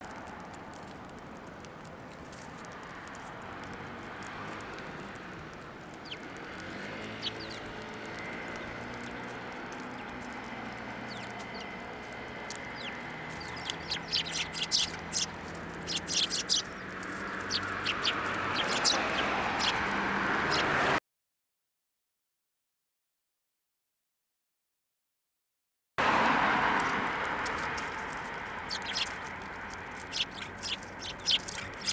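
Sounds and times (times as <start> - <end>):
steady street hum: 0.0 - 21.0, 26.0 - 31.9
birds chirping: 1.8 - 21.0, 26.6 - 31.9.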